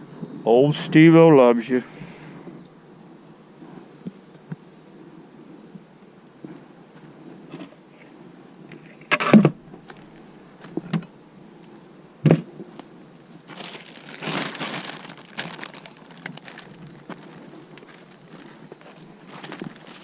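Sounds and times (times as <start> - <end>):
rustling scrape: 12.6 - 20.0.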